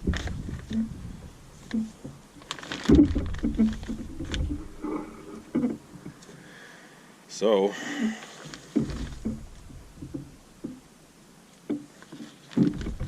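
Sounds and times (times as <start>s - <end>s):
rustling: 0.0s - 6.4s, 8.0s - 13.0s
metal pump knocks and taps: 8.8s - 10.8s.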